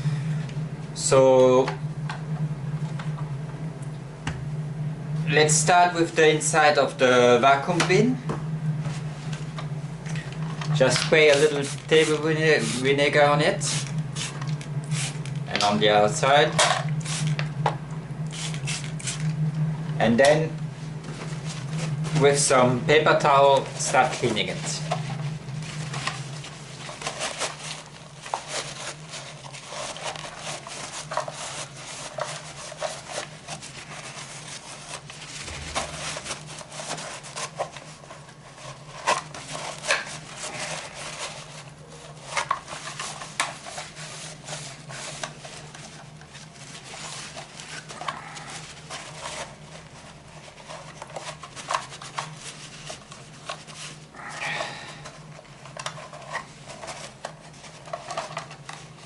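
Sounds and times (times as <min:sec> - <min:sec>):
steady low hum: 0:00.0 - 0:59.0
paper towel scrubbing plastic: 0:10.7 - 0:17.6, 0:18.3 - 0:19.4, 0:20.0 - 0:59.0.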